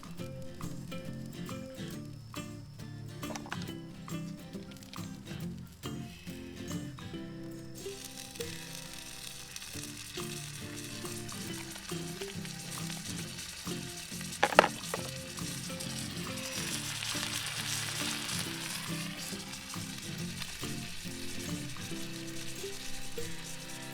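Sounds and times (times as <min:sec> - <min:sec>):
background music: 0:00.0 - 0:23.9
food sizzling as it fries: 0:07.5 - 0:23.9.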